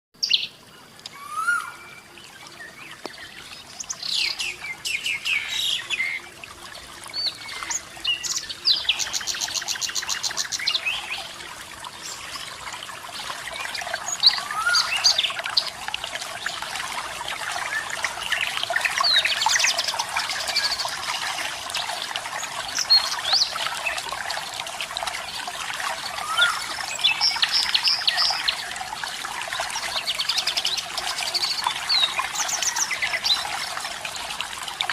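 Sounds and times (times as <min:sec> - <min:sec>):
running water rushing: 0:00.2 - 0:34.9
birds chirping and whistling: 0:01.1 - 0:02.0, 0:14.1 - 0:15.3, 0:26.2 - 0:28.4.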